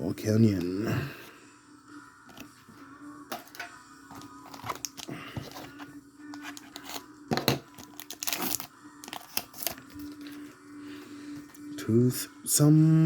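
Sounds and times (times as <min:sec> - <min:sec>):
foil wrapper tearing and crinkling: 0:04.5 - 0:05.1, 0:07.7 - 0:10.2.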